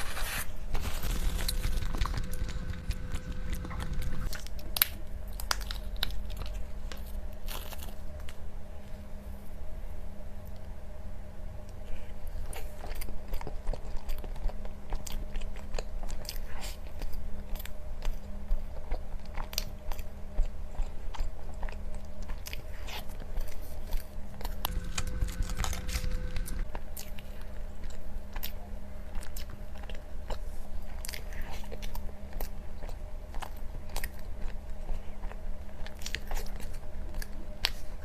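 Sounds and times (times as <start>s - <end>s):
steady low hum: 0.0s - 38.0s
person chewing crunchy food: 11.8s - 38.0s.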